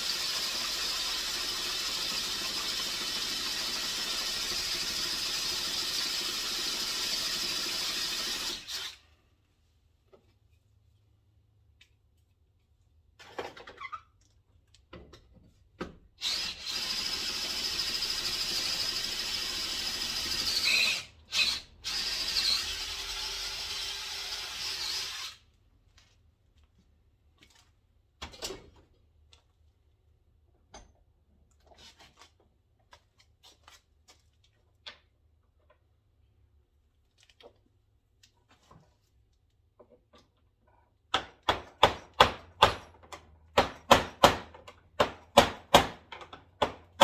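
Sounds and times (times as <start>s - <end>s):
power drill whining: 0.0s - 9.0s, 16.2s - 25.4s.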